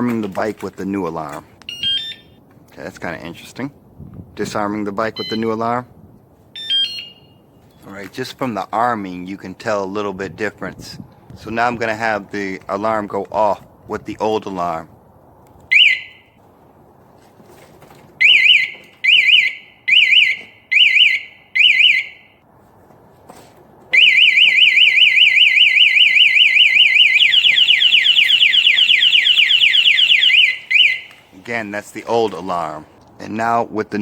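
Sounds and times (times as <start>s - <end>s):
alarm chirp: 1.7s - 2.4s, 5.2s - 5.5s, 6.6s - 7.6s, 15.7s - 16.4s, 18.2s - 22.4s, 23.9s - 31.2s
warbling alarm beeps: 5.2s - 5.4s, 6.6s - 7.4s, 18.2s - 22.4s, 24.0s - 31.1s
warbling alarm siren: 6.6s - 7.4s, 15.7s - 16.4s, 18.2s - 22.4s, 23.9s - 31.2s.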